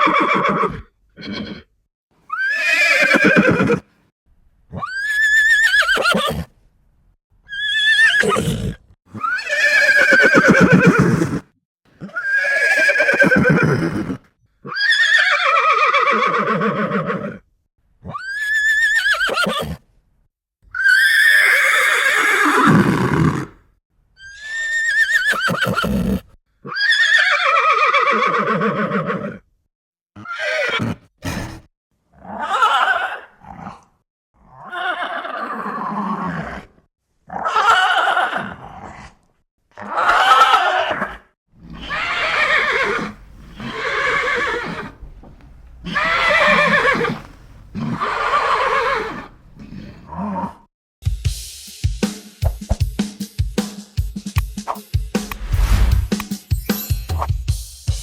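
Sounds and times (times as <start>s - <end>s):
horse whinnies: 0.0s - 1.7s, 2.3s - 3.9s, 4.7s - 6.5s, 7.5s - 17.4s, 18.0s - 19.8s, 20.7s - 23.5s, 24.2s - 29.4s, 30.2s - 33.8s, 34.4s - 36.7s, 37.3s - 39.1s, 39.8s - 45.0s, 45.8s - 50.7s.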